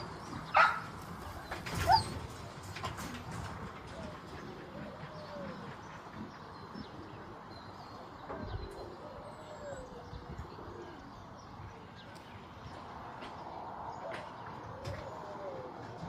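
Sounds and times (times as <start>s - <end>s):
background hubbub: 0.0s - 16.0s
dog whining: 1.7s - 2.3s.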